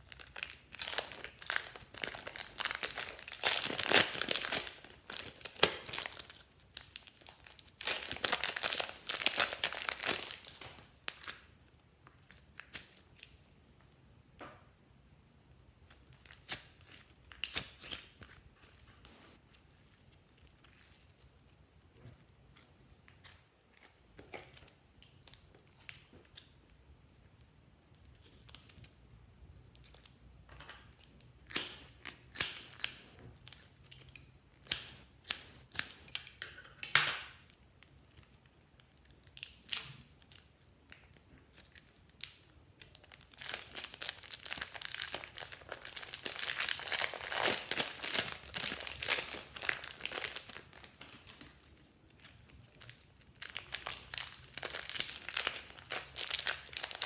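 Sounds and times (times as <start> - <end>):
crinkling crackling handling: 0.0 - 11.4, 41.5 - 57.0.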